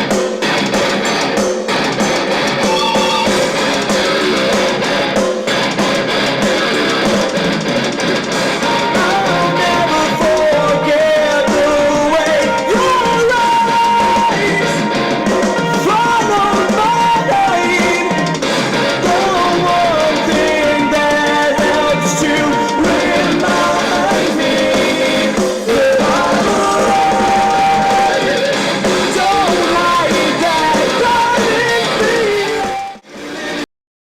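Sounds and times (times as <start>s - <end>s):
rock song with singing: 0.0s - 33.6s.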